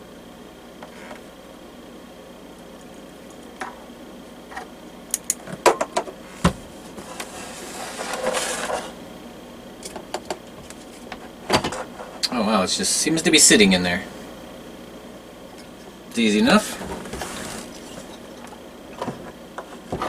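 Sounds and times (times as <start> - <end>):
scraping rustle: 6.3 - 9.0, 16.6 - 18.3.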